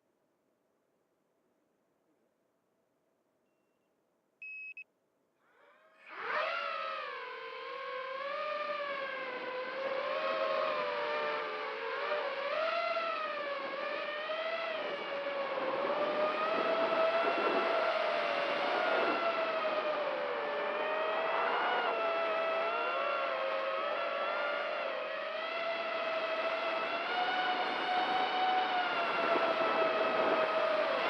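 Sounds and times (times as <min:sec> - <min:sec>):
short electronic beep: 0:03.5 - 0:04.8
quadcopter motors whining: 0:05.5 - 0:31.0.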